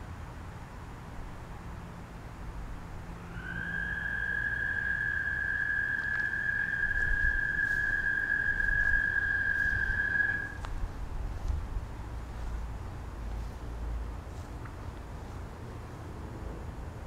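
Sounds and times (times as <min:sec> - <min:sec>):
toad trilling: 0:03.2 - 0:10.7.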